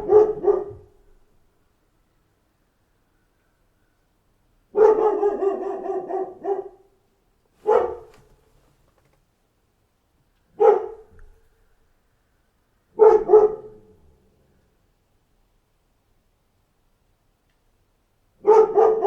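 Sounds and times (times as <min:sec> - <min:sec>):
dog barking: 0:00.0 - 0:01.0, 0:04.7 - 0:07.0, 0:07.6 - 0:08.4, 0:10.6 - 0:11.2, 0:12.9 - 0:14.0, 0:18.4 - 0:19.0.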